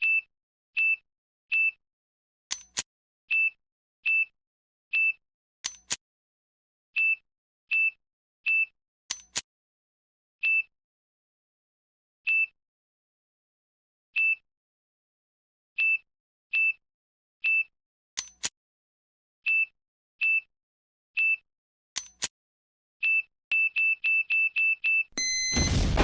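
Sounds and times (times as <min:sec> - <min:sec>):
short electronic beeps: 0:25.2 - 0:26.0.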